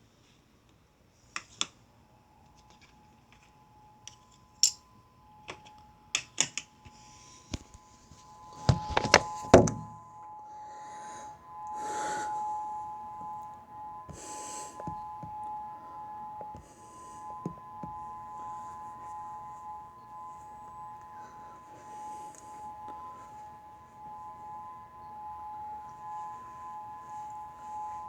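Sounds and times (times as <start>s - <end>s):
distant two-tone warning siren: 2.0s - 28.0s
thumps: 8.1s - 10.0s.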